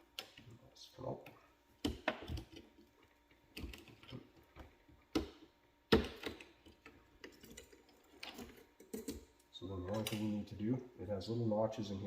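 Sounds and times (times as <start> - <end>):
plastic parts clicking and knocking: 1.8 - 10.3.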